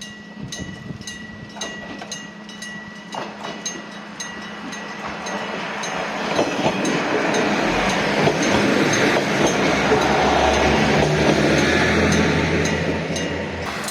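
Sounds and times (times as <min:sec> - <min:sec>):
train rumble and rail noise: 0:00.0 - 0:13.9
level crossing bell ringing: 0:13.6 - 0:13.9.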